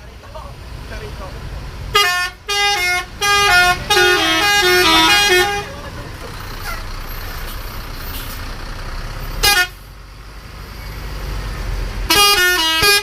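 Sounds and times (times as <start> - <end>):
engines and traffic rumble: 0.0 - 13.0
bus multi-tone horn: 1.9 - 5.9, 9.4 - 9.9, 12.1 - 13.0.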